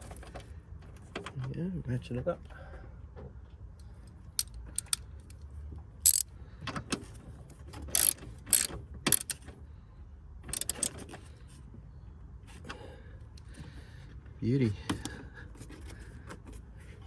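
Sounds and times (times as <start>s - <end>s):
hand ratchet clicking: 4.4s - 5.0s, 7.9s - 9.4s, 10.5s - 10.9s.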